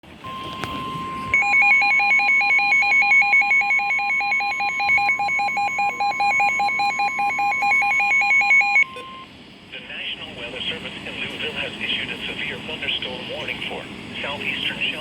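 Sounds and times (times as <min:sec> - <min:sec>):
steady alarm tone: 0:00.2 - 0:09.3
rapid two-pitch beeping: 0:00.3 - 0:09.3.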